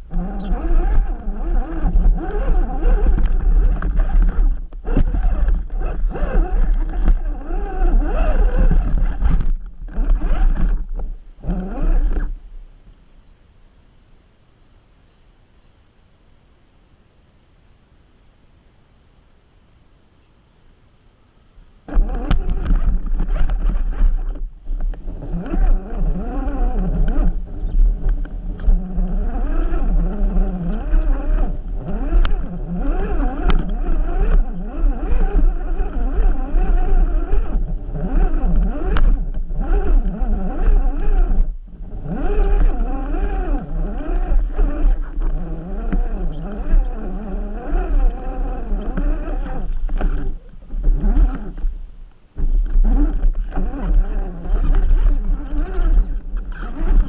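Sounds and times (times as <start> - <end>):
electric motor whining: 0.0 - 12.4, 21.9 - 51.8, 52.4 - 57.0
knocks and scrapes: 0.1 - 12.4, 21.9 - 41.4, 52.4 - 57.0.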